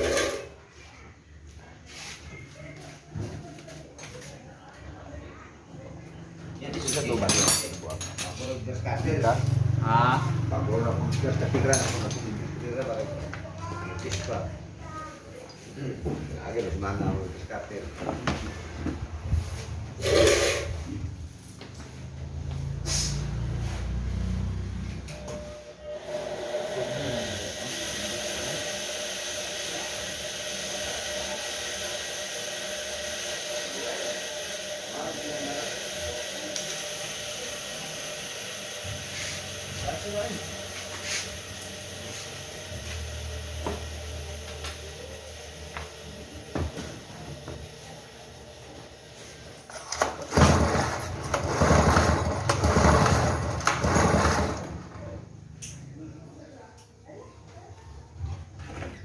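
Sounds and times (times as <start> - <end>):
chainsaw engine running unevenly: 50.3 - 55.1.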